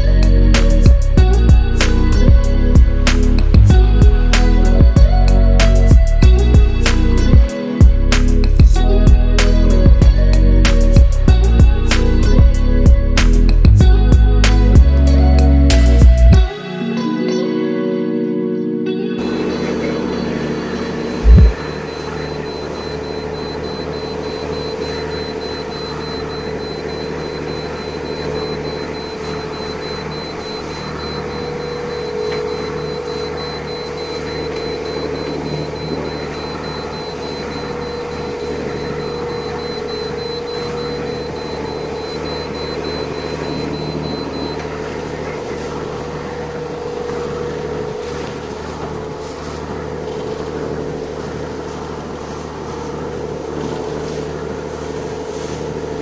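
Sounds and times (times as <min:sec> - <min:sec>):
ship engine droning: 0:00.0 - 0:56.0
rushing noise: 0:19.2 - 0:45.3
thin high-pitched whine: 0:19.2 - 0:56.0.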